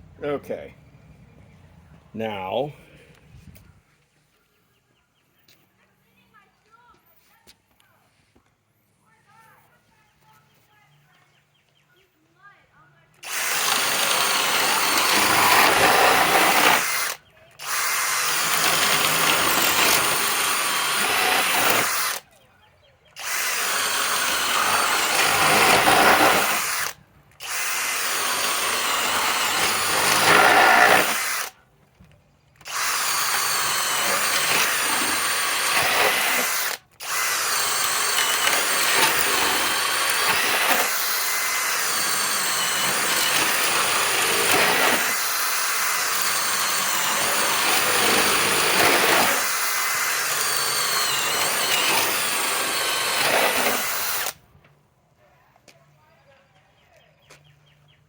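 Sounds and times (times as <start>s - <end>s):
cordless drill boring into wood: 13.2s - 22.2s, 23.1s - 31.6s, 32.6s - 54.4s.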